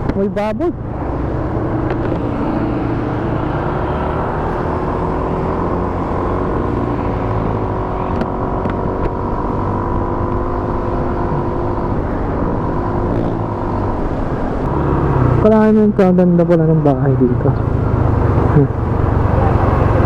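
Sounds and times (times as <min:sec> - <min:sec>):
heavy wind noise: 0:00.0 - 0:20.0
road noise: 0:00.0 - 0:20.0
scooter engine running: 0:14.6 - 0:16.0, 0:17.2 - 0:20.0.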